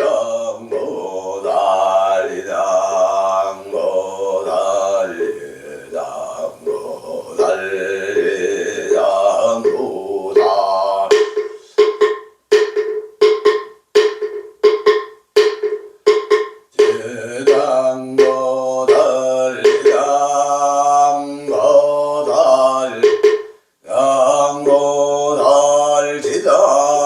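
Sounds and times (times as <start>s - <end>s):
man chanting: 0.0s - 11.8s, 16.8s - 23.2s, 23.8s - 27.0s
percussion strikes: 0.0s - 27.0s.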